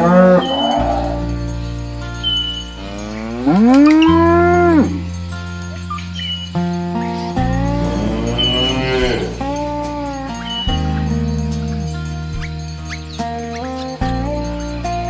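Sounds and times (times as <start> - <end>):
cow mooing: 0.0 - 1.4, 2.8 - 5.0, 7.2 - 9.7
background music with held notes: 0.0 - 15.0.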